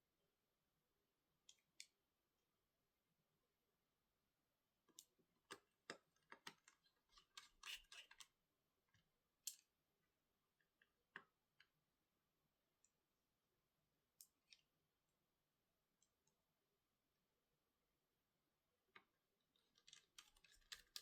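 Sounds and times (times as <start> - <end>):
small tools clicking and scraping: 6.2 - 8.3, 19.6 - 21.0.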